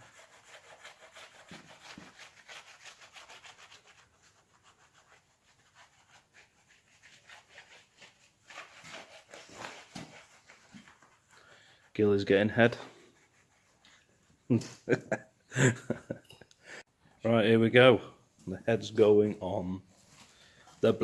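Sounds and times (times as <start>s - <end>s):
quick rubbing strokes: 0.0s - 14.2s.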